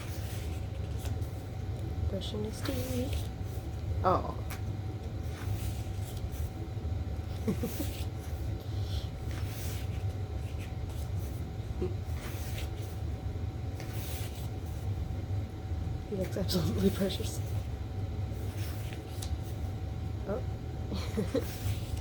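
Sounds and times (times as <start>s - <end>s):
paper pages rustling: 0.0s - 3.5s, 4.5s - 6.6s, 9.2s - 11.4s, 12.1s - 13.0s, 13.7s - 14.9s, 18.3s - 19.6s
low background hum: 0.0s - 22.0s.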